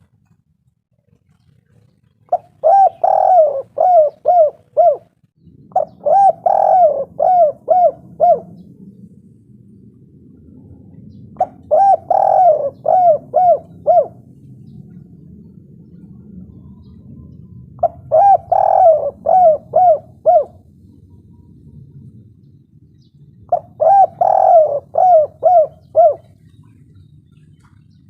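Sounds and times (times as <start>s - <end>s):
low steady hum: 0.0s - 28.0s
dove cooing: 1.4s - 9.0s, 11.0s - 21.9s, 23.5s - 27.0s.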